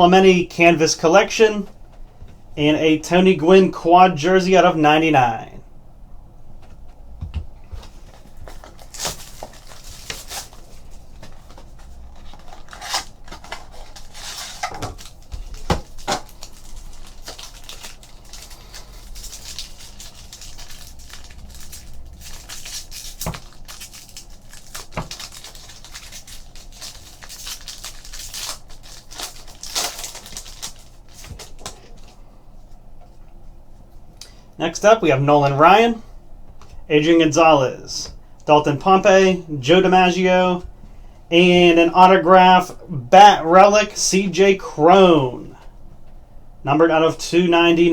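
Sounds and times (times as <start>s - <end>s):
wrappers tearing and crinkling: 8.0s - 32.2s.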